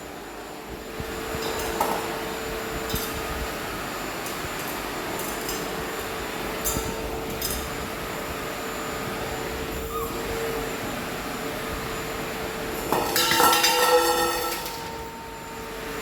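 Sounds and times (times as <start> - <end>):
vacuum cleaner humming: 5.8 - 13.2.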